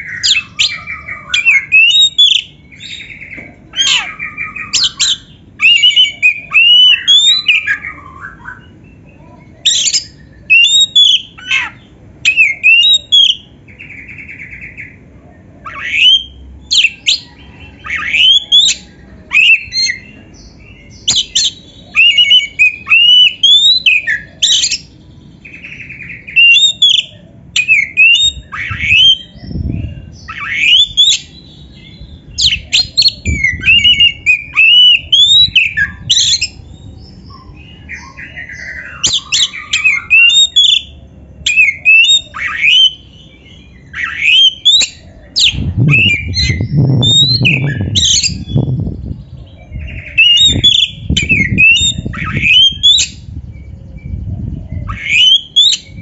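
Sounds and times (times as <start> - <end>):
bird singing whistled phrases: 0.0 - 14.9, 15.6 - 20.2, 20.8 - 48.9, 49.8 - 54.1, 54.7 - 56.0.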